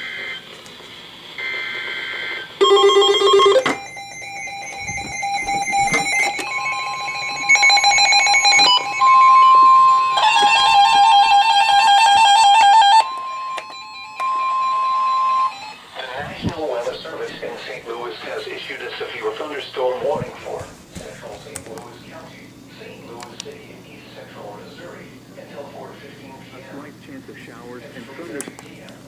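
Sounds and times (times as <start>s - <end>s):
steady alarm tone: 1.1s - 18.8s.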